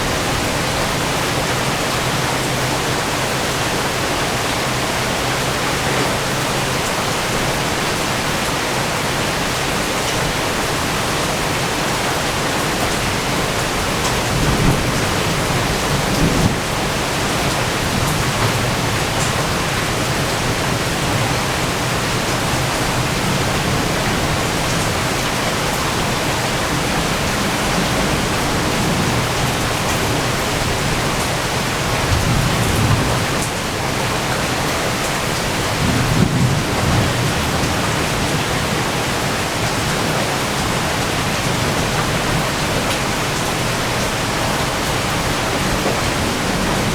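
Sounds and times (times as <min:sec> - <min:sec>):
heavy rain falling: 0:00.0 - 0:46.9
low rolls of thunder: 0:12.5 - 0:34.7, 0:35.4 - 0:39.2.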